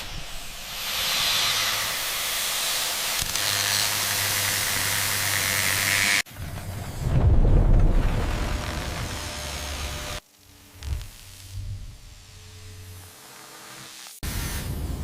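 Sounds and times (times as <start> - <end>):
loud rushing hiss: 0.0 - 3.2, 8.3 - 15.0
low rumble: 6.4 - 10.2.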